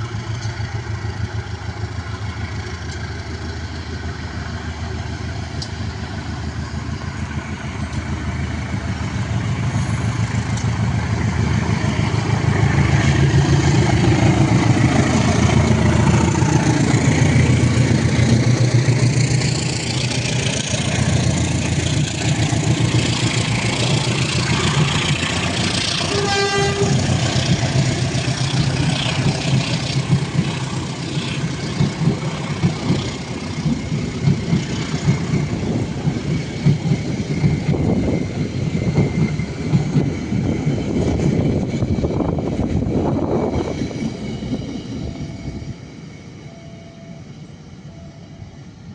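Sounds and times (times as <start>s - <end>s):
train clattering past: 0.0s - 46.5s
diesel train engine throb: 0.0s - 48.9s
train horn toot: 25.9s - 27.2s.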